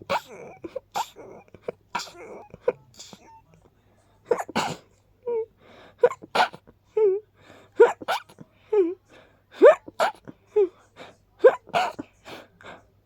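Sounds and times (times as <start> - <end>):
person sneezing: 0.0 - 3.4, 4.3 - 4.9, 6.0 - 6.6, 7.8 - 8.4, 9.6 - 10.3, 11.4 - 12.1.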